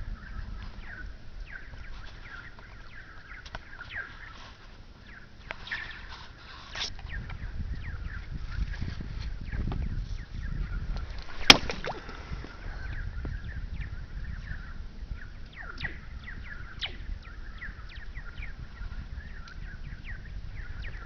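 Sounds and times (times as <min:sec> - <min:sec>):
stick striking ice: 0:11.4 - 0:11.9
laser-like ice whistles: 0:15.6 - 0:17.1.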